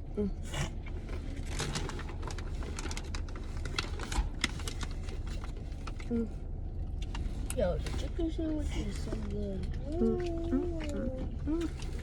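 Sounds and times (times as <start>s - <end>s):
low rumble inside car: 0.0s - 12.0s
food packaging crinkling: 1.0s - 6.1s
person eating: 9.7s - 12.0s.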